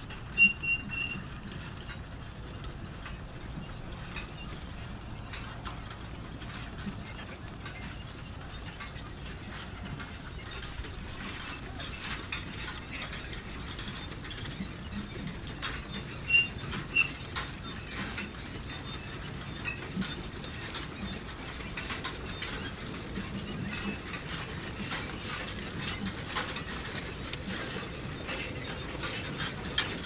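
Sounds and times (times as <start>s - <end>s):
sharp squeak: 0.4s - 1.2s, 16.2s - 17.2s.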